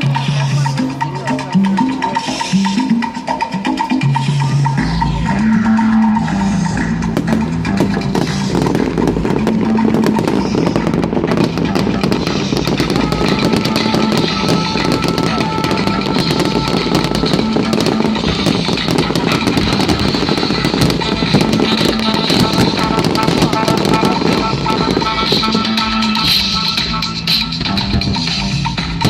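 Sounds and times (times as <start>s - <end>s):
music playing: 0.0s - 29.0s
fireworks crackling and popping: 6.7s - 29.0s.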